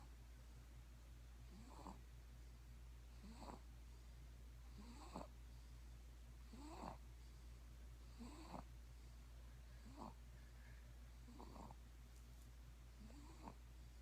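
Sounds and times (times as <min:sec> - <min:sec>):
faint snoring: 0:01.5 - 0:02.0, 0:03.1 - 0:03.7, 0:04.7 - 0:05.4, 0:06.4 - 0:07.0, 0:08.0 - 0:08.7, 0:09.8 - 0:10.2, 0:11.2 - 0:11.8, 0:13.0 - 0:13.6.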